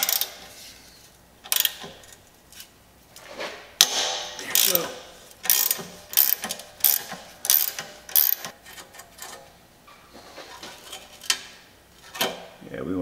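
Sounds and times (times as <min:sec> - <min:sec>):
ratchet wrench clicking: 0:00.0 - 0:00.4, 0:01.5 - 0:02.2, 0:04.5 - 0:08.5.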